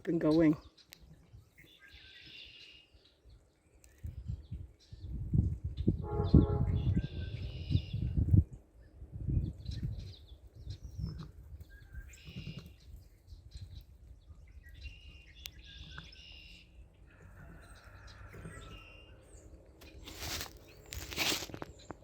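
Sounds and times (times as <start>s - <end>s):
songbirds chirping: 0.0s - 22.0s
brief rustle: 19.8s - 22.0s.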